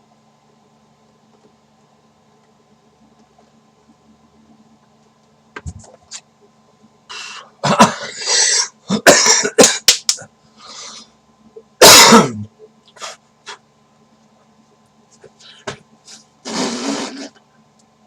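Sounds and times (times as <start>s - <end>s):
person coughing: 7.6s - 9.9s, 11.8s - 13.2s.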